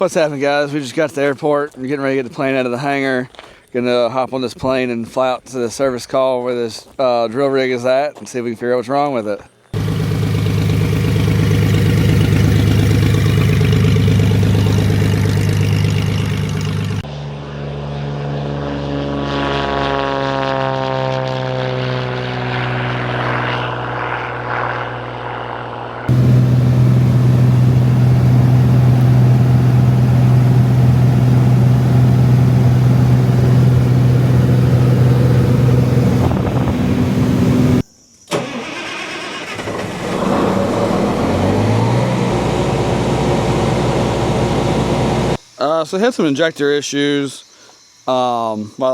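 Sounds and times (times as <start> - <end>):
light aircraft engine droning: 9.8 - 38.8, 39.4 - 45.4.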